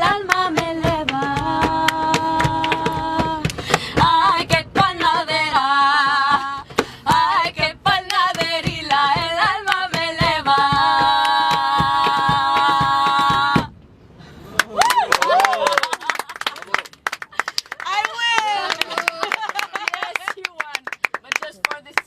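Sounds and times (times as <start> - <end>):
women singing folk song: 0.0 - 13.8
hand percussion beat: 0.2 - 5.2, 6.0 - 13.7.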